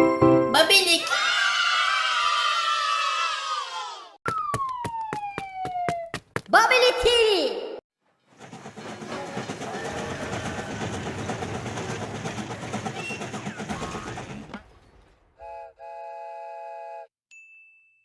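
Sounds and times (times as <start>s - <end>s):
cartoon train chugging: 8.2s - 14.6s
train whistle: 15.4s - 17.1s.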